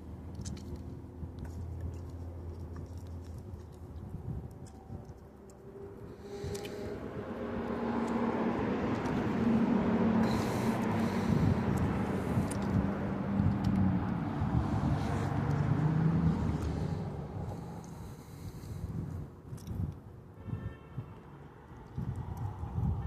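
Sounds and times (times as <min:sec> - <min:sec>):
vehicle engine passing by: 0:05.5 - 0:18.9.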